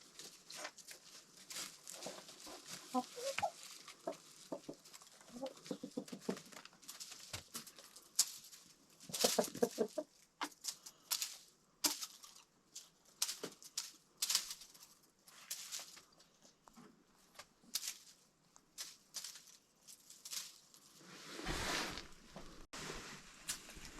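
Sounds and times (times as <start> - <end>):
birds pecking at dried stalks: 0.0 - 21.0
hens clucking: 1.9 - 6.7, 9.1 - 10.6.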